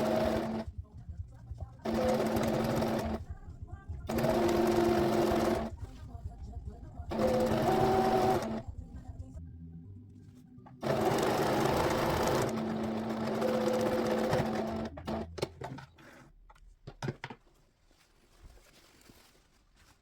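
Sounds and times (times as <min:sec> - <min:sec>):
sewing machine stitching: 0:00.0 - 0:00.7, 0:01.8 - 0:03.3, 0:04.1 - 0:05.8, 0:07.1 - 0:08.7, 0:10.8 - 0:16.2.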